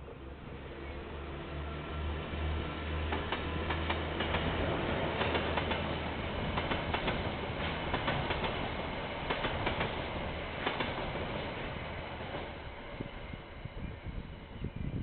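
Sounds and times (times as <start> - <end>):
train rumble: 0.0 - 15.0
train wheels clicking over rail joints: 3.0 - 12.6.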